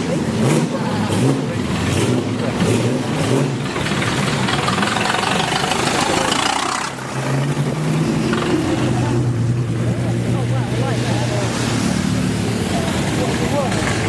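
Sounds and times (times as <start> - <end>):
racing car engines revving: 0.0 - 14.0.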